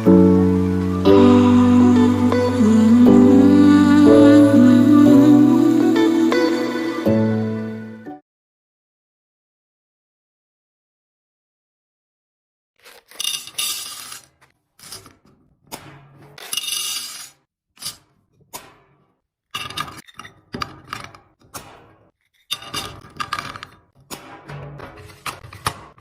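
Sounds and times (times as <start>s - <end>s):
containers clinking and scraping: 12.8s - 15.4s, 16.2s - 18.0s, 19.6s - 21.2s, 22.3s - 23.9s.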